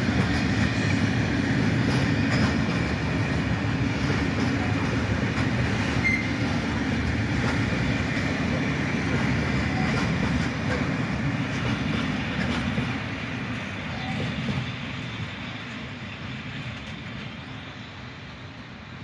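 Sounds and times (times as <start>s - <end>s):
freight train wheels rumbling: 0.0s - 19.0s
faint wheel squeal: 5.9s - 6.4s.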